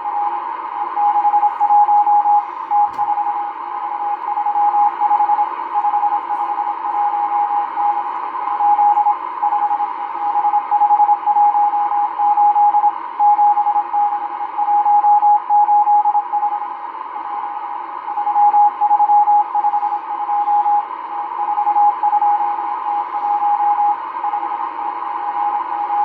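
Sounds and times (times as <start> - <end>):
morse code tone: 0.0 - 13.9.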